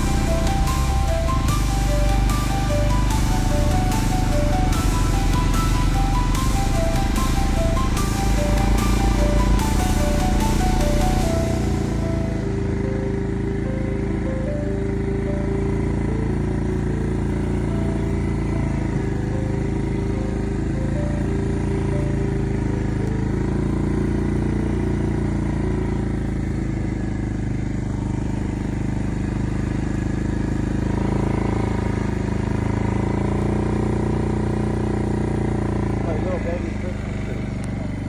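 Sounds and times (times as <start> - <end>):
motor engine running: 0.0 - 38.0.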